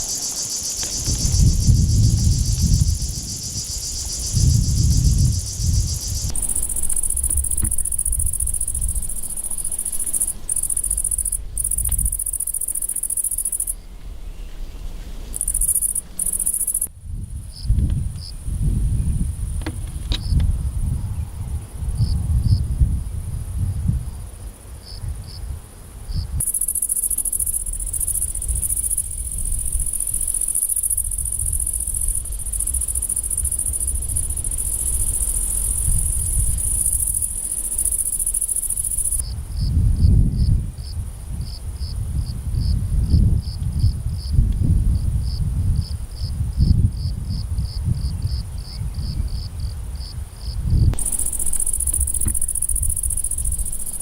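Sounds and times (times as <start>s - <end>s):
high-pitched insect drone: 0.0s - 13.8s, 15.3s - 16.9s, 26.4s - 39.3s, 51.0s - 54.0s
cricket chirping: 0.0s - 25.5s, 26.1s - 54.0s
low rumbling noise: 0.9s - 12.5s.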